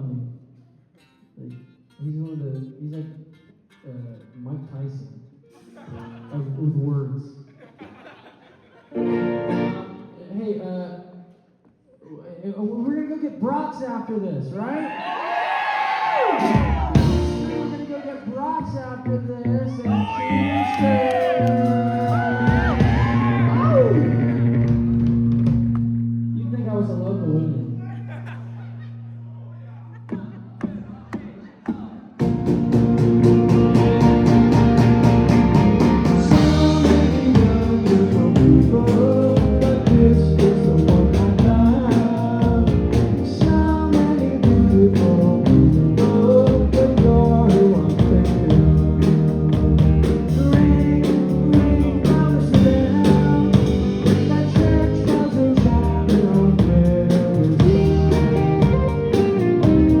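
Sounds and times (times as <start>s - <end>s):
guitars: 8.9s - 10.2s, 16.4s - 26.7s, 32.2s - 60.0s
drum kit: 16.2s - 18.0s, 20.0s - 26.0s, 30.2s - 60.0s
person singing: 19.5s - 24.5s, 35.8s - 60.0s.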